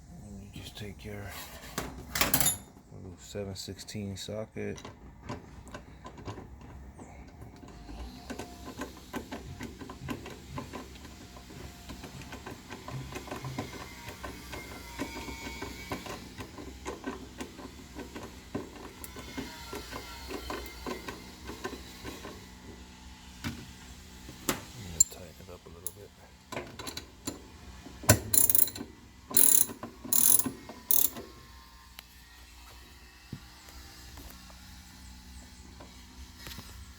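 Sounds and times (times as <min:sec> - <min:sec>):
ratchet wrench clicking: 0:28.3 - 0:28.8, 0:29.4 - 0:31.2.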